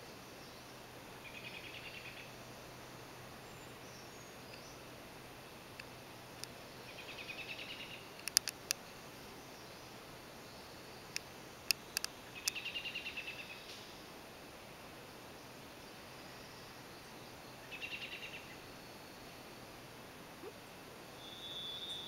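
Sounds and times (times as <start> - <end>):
songbird trill: 0.0 - 14.0, 15.3 - 19.7, 20.4 - 22.0
faint background hiss: 0.0 - 22.0
sharp bird ticks: 7.5 - 8.8, 11.1 - 12.9.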